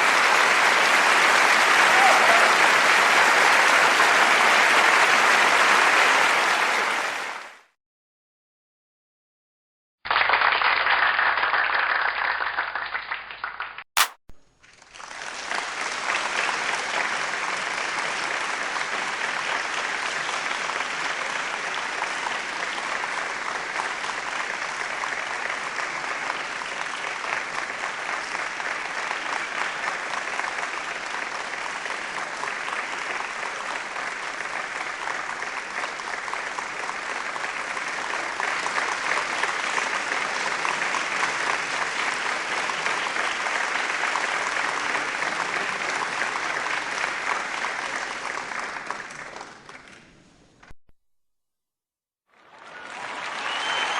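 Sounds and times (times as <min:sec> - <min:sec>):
audience applause: 0:00.0 - 0:07.7, 0:14.9 - 0:50.1, 0:52.3 - 0:53.9
sharp click: 0:14.0 - 0:14.4.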